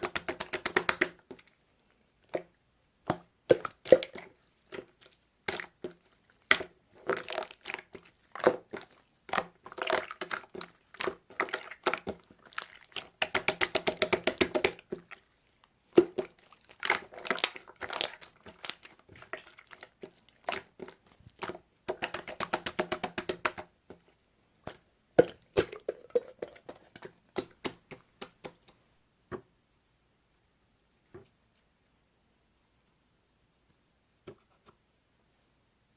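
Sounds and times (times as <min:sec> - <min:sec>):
rapid popping of slime: 0:00.0 - 0:01.4, 0:02.3 - 0:15.2, 0:15.9 - 0:28.8.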